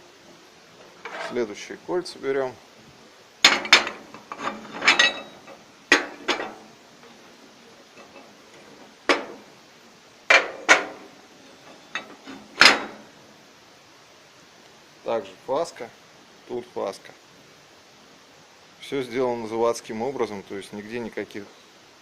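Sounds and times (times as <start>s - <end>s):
metal stove rings clanking: 3.4s - 7.2s, 7.9s - 8.4s, 10.3s - 13.0s.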